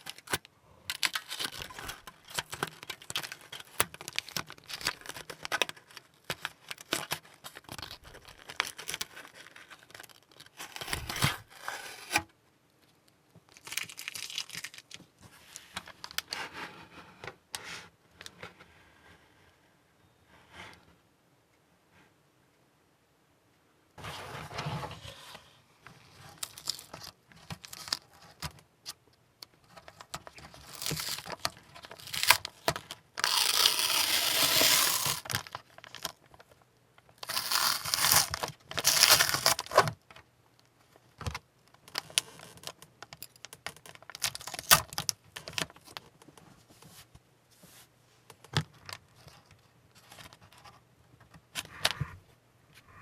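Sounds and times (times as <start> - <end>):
masking tape ripping: 10.7 - 12.2, 30.7 - 31.3, 32.0 - 32.4, 33.2 - 35.3, 37.2 - 39.7.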